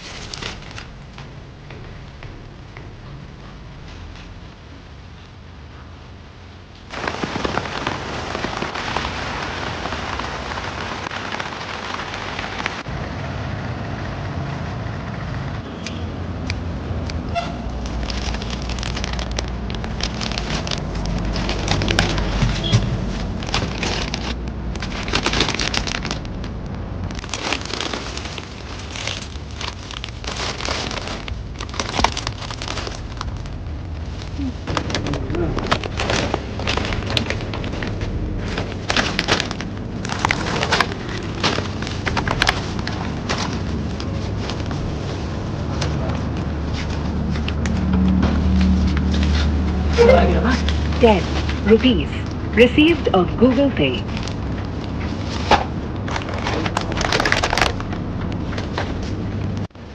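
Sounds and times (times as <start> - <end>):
heavy rain falling: 6.2 - 15.7, 16.8 - 59.9
rain hissing: 6.8 - 13.5.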